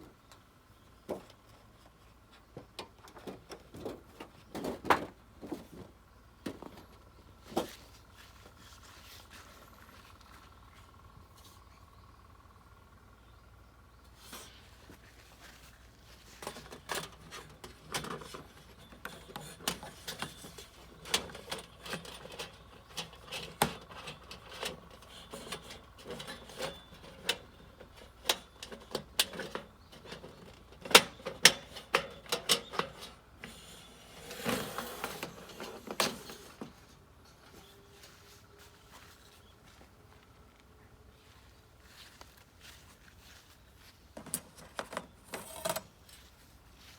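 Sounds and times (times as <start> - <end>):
scraping rustle: 14.2 - 39.5
metal parts clinking and knocking: 16.4 - 36.6.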